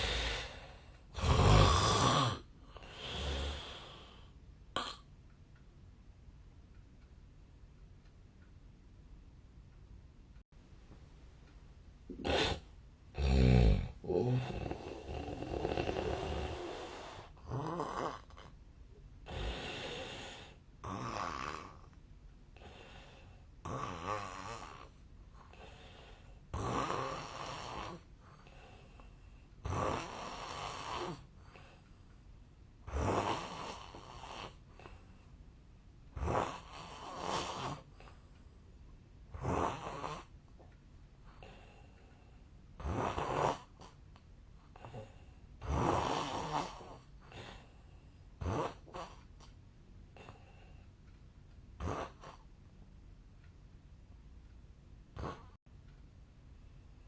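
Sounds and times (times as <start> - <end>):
quiet breathing: 0.0 - 4.6, 11.4 - 35.5, 36.1 - 52.6
man snoring loudly: 1.2 - 4.1, 13.2 - 18.4, 19.3 - 21.8, 23.6 - 24.9, 26.5 - 28.0, 29.6 - 31.2, 32.9 - 34.6, 36.2 - 37.9, 39.4 - 40.3, 42.8 - 43.7, 44.8 - 47.6, 48.4 - 49.1, 51.8 - 52.4, 55.2 - 55.6.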